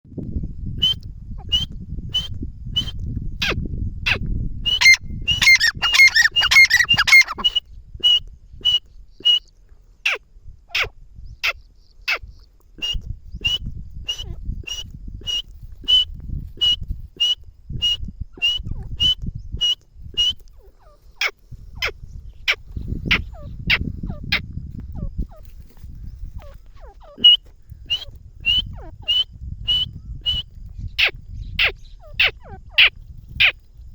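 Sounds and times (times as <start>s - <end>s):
bird calling sharp high notes: 4.7s - 9.5s.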